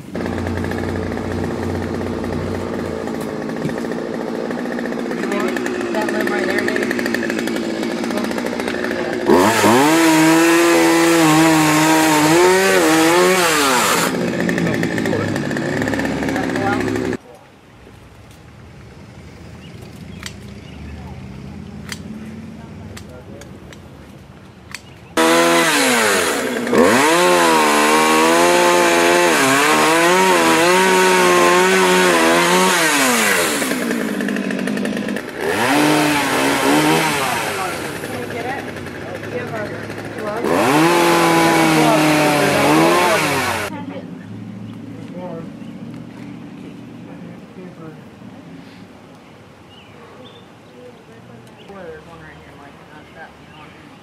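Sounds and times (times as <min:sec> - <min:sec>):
chainsaw cutting wood: 0:00.0 - 0:17.2, 0:25.2 - 0:43.7.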